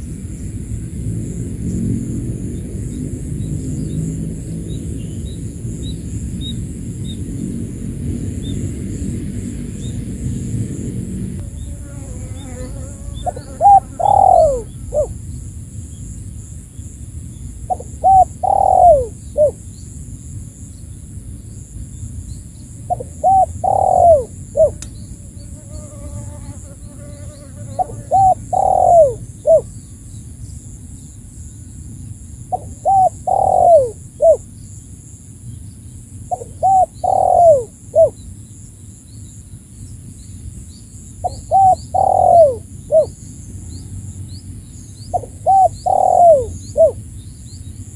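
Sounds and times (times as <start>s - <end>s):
dove cooing: 12.3s - 15.2s, 17.7s - 19.6s, 22.9s - 24.8s, 27.6s - 29.7s, 32.5s - 34.4s, 36.3s - 38.2s, 41.2s - 43.1s, 45.2s - 47.0s.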